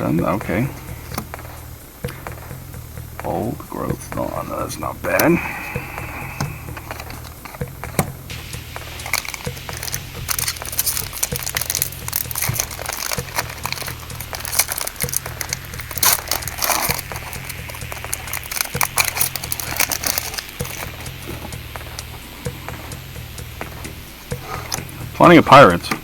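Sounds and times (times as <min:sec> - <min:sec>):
background music with low beat: 0:00.0 - 0:26.0
wrapper and cards crinkling: 0:08.3 - 0:22.2.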